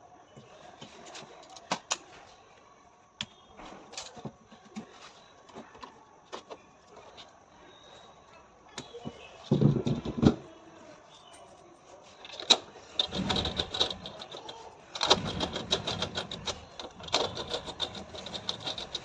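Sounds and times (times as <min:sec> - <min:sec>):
parts and tools clicking and knocking: 0:08.8 - 0:10.5, 0:12.2 - 0:19.0.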